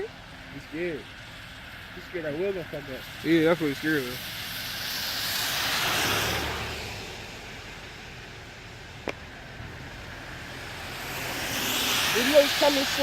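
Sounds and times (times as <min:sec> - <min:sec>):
tyres hissing on wet pavement: 0:00.0 - 0:13.0.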